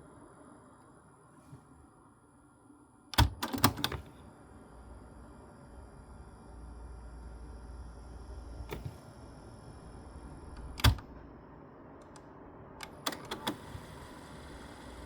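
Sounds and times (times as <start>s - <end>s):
cassette deck mechanism clicking: 3.2s - 4.1s, 10.5s - 11.1s, 12.8s - 13.8s.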